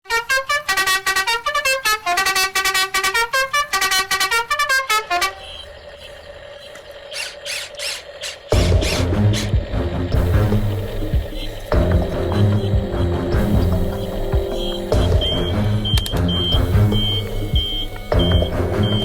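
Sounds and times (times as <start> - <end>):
steady tone: 8.5 - 19.0
fast tune of bright notes: 8.6 - 19.0.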